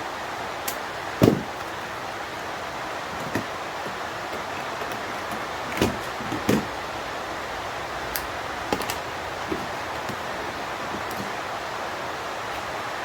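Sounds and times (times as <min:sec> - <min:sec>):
steady background hiss: 0:00.0 - 0:13.0
small parts and tools knocking: 0:00.7 - 0:06.8, 0:08.1 - 0:11.4.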